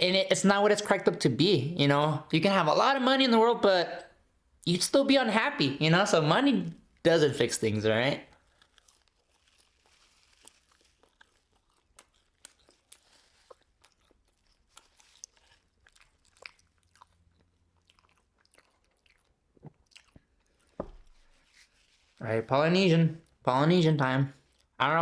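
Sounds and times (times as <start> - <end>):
person chewing food: 8.3 - 22.2, 24.4 - 24.8.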